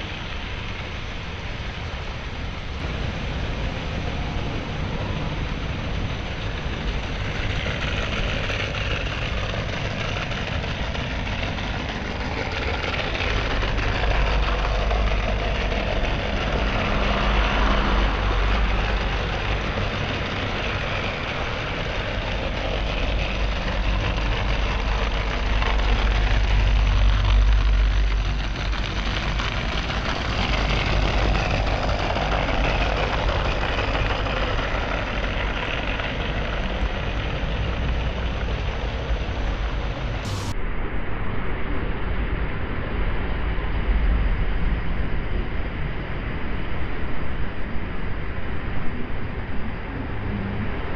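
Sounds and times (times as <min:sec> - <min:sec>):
model train rumbling on track: 0:00.0 - 0:40.6.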